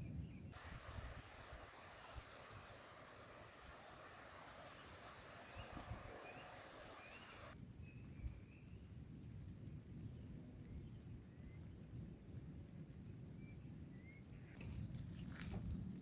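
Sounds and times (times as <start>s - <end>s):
soft background hiss: 0.6s - 8.0s
insects trilling: 0.6s - 16.0s
faint bird chirps: 1.7s - 8.9s.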